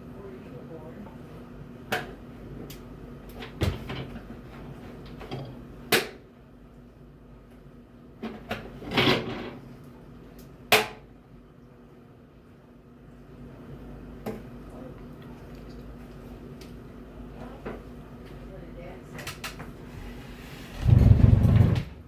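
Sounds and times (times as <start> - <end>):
scraping knock: 19.9 - 22.0.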